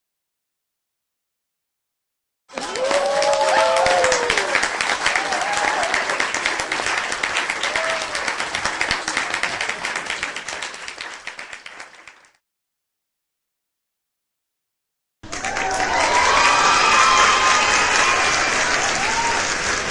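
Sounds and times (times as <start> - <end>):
crowd applauding: 2.5 - 12.4, 15.2 - 19.9
whoops and shouts: 2.6 - 6.1, 7.6 - 8.2, 15.4 - 19.6.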